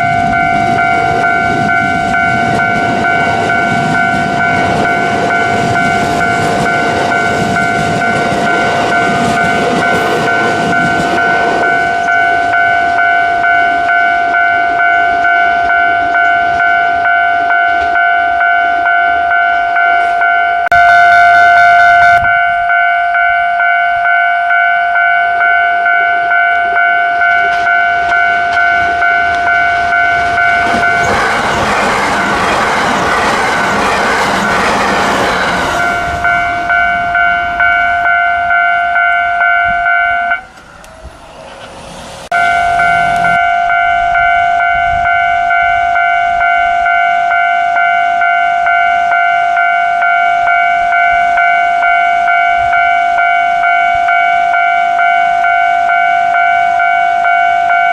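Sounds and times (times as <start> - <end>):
level crossing bell clanging: 0.0 - 40.9, 42.3 - 57.9
train passing: 0.0 - 57.9
train horn blast: 20.0 - 22.4, 39.7 - 46.8.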